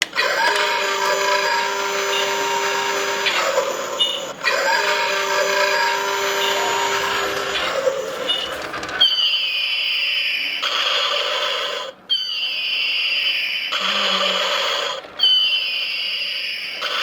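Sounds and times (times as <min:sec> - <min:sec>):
electronic buzzing tone: 0:00.2 - 0:09.5.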